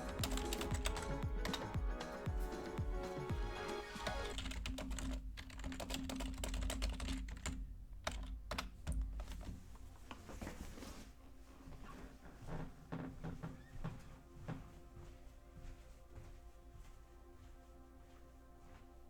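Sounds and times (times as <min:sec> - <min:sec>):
typing on a keyboard: 0:00.0 - 0:03.2, 0:04.2 - 0:09.6
faint background music: 0:00.0 - 0:19.0.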